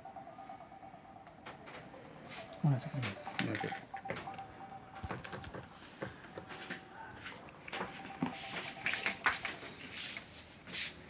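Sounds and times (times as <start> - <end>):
keypad beeps: 2.4 - 5.7, 7.8 - 9.4.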